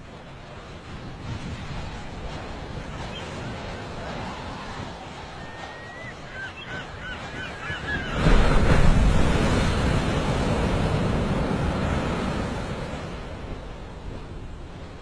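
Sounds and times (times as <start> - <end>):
bird chirping high: 5.4 - 8.2.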